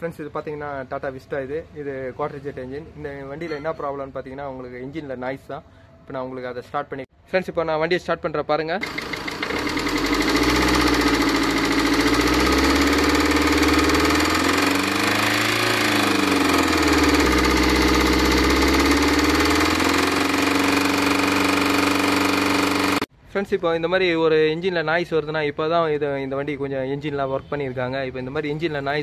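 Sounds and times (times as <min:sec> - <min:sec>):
diesel engine knocking: 0:08.8 - 0:23.0
engine revving: 0:08.8 - 0:23.1.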